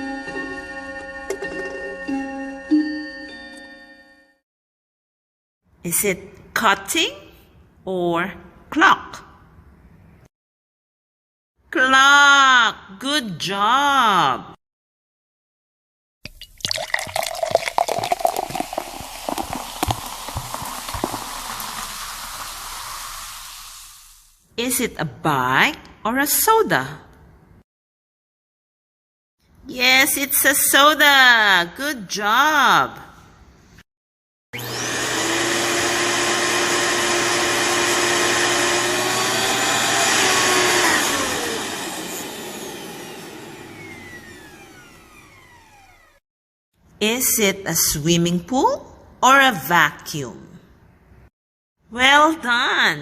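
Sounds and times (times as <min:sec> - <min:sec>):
soda fizzing in a glass: 0:16.3 - 0:24.4
vacuum cleaner motor whine: 0:34.6 - 0:46.2.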